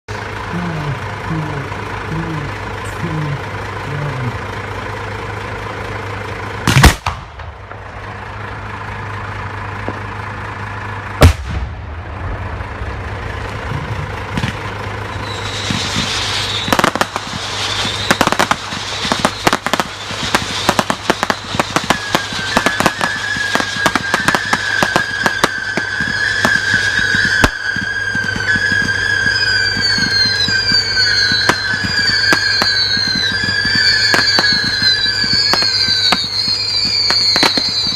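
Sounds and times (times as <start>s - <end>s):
firework whistles: 6.6s - 7.5s, 13.4s - 37.9s
firework bangs: 6.6s - 8.1s, 11.2s - 37.9s
fireworks crackling and popping: 6.6s - 8.2s, 11.2s - 37.9s.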